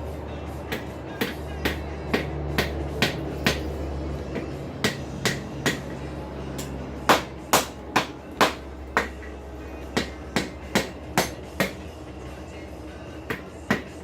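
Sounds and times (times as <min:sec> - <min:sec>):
steady low hum: 0:00.0 - 0:14.0
wooden mallet striking steel rasp: 0:00.7 - 0:03.7, 0:06.6 - 0:11.9, 0:13.3 - 0:14.0.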